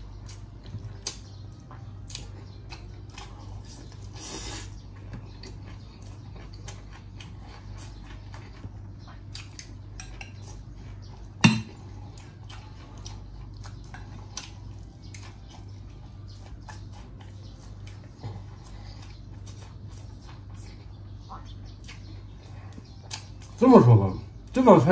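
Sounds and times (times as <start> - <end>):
utensils clinking on dishes: 9.9 - 10.6, 11.4 - 11.8.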